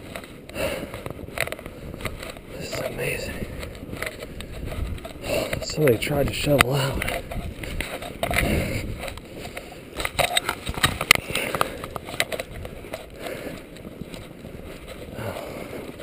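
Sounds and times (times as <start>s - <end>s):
footsteps crunching through snow: 0.0s - 16.0s.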